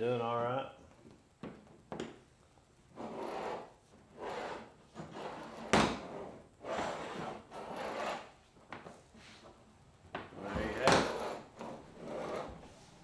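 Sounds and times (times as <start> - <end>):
rope rubbing through pulleys: 11.1 - 12.9.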